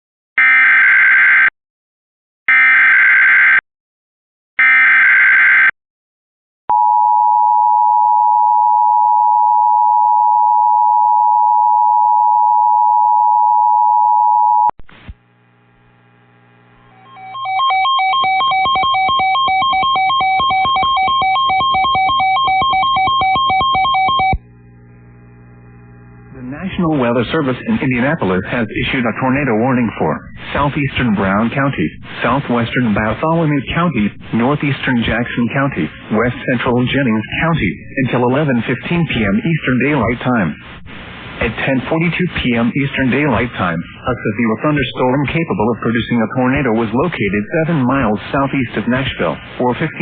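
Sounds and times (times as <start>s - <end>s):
steady electronic attention tone: 16.8s - 24.4s
pulsing electronic tones: 16.9s - 24.4s
raspy digital data tones: 17.0s - 24.4s.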